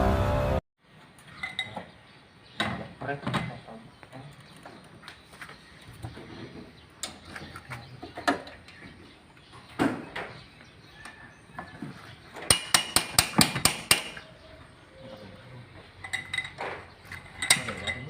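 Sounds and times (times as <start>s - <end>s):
metal tools clinking: 16.0s - 18.0s.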